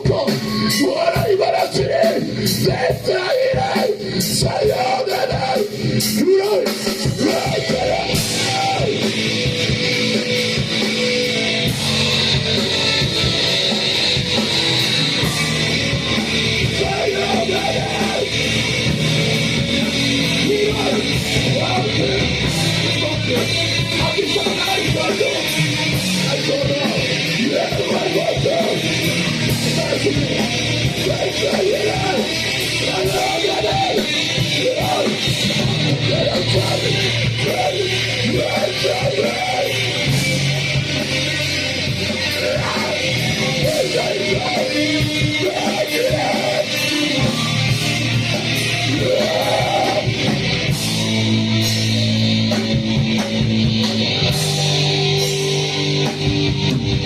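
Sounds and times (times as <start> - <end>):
live band playing distorted guitar: 0.0 - 57.0
person yelling vocals: 15.6 - 18.4.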